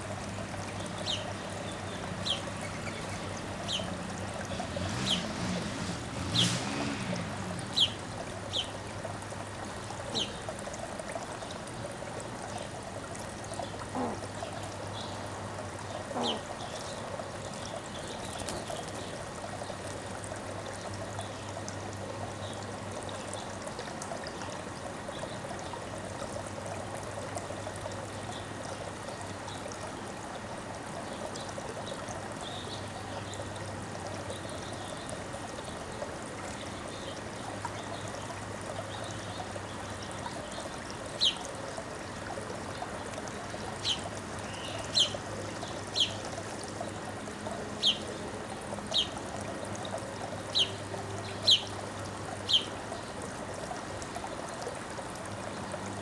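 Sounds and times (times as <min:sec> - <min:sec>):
trickling water: 0:00.0 - 0:56.0
bird chirping: 0:43.8 - 0:45.2, 0:50.5 - 0:51.7.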